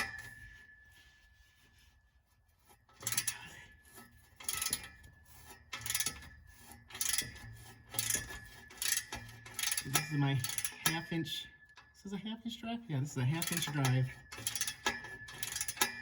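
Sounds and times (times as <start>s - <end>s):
hand ratchet clicking: 2.9s - 11.0s, 13.4s - 16.0s.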